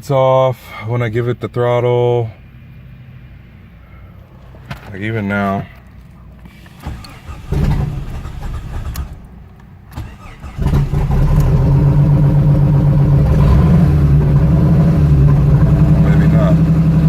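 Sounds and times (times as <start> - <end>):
car engine starting and idling: 5.7 - 17.0.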